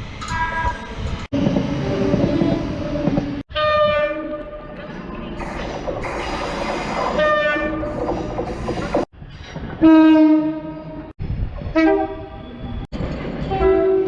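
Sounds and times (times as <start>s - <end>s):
moving train noise: 0.0s - 14.0s
train horn blasts: 13.5s - 14.0s.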